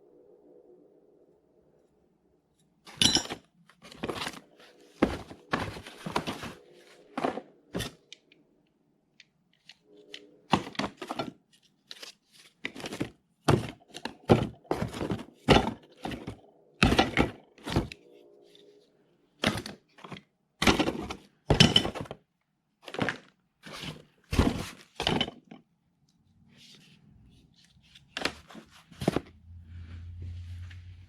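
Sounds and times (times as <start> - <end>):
faint steady hum: 0.0 - 12.0
tool accessories knocking and clattering: 2.9 - 4.4, 5.0 - 8.1, 10.5 - 11.3, 12.6 - 18.0, 19.4 - 22.2, 22.8 - 25.6.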